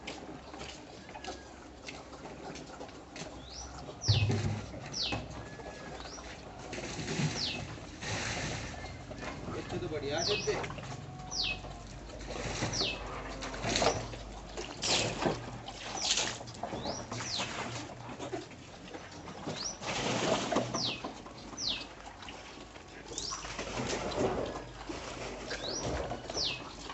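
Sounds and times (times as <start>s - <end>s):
rustling noise: 6.0s - 10.3s, 19.4s - 21.3s.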